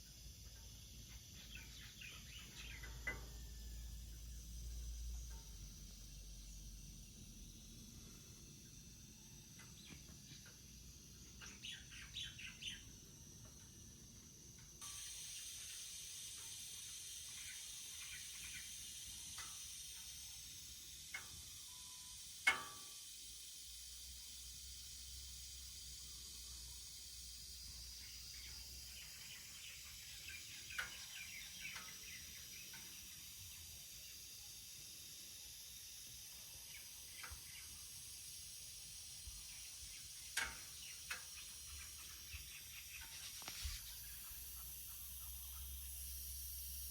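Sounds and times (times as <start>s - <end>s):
refrigerant hissing from leak: 14.8s - 34.5s, 35.3s - 46.9s.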